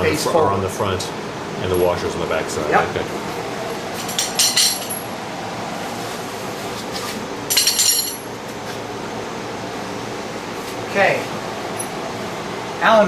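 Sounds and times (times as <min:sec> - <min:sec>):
small metal hardware clinking: 0:04.0 - 0:05.1, 0:07.5 - 0:08.3.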